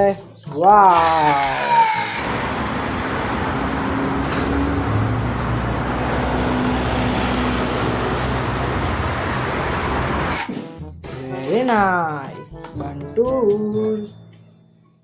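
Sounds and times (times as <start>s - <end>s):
traffic noise: 0.9s - 10.6s
bus engine rumbling: 1.0s - 10.5s.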